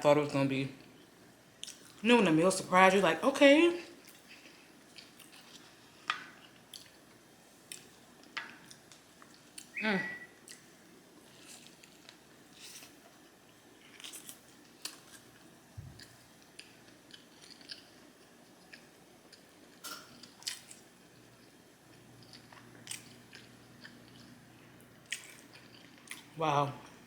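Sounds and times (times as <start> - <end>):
chewing food: 0.8 - 2.0, 3.9 - 27.0.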